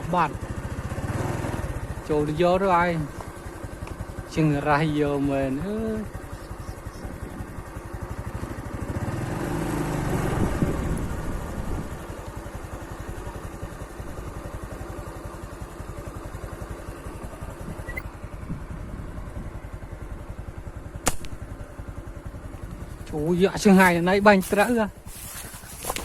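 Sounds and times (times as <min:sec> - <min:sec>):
small engine pulsing: 0:00.0 - 0:26.0.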